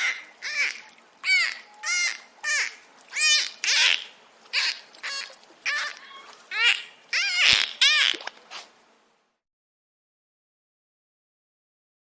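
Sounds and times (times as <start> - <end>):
dolphin squeaks and whistles: 0.0 - 8.2.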